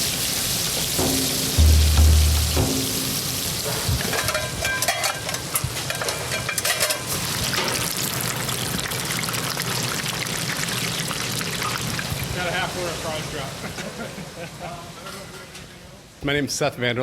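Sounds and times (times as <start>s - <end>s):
frying hiss: 0.0s - 16.7s
utensils and pans clattering: 0.9s - 7.8s.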